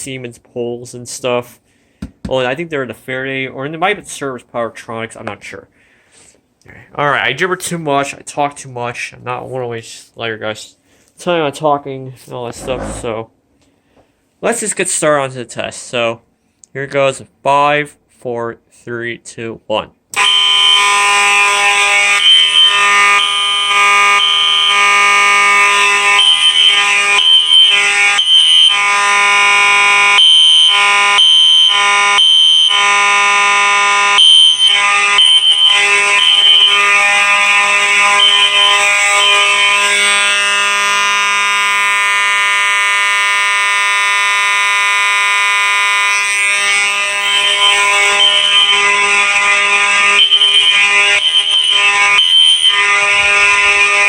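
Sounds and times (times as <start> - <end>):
harsh buzzing fire alarm horn: 20.1 - 54.0
higher alarm tone switching on and off: 20.2 - 54.0.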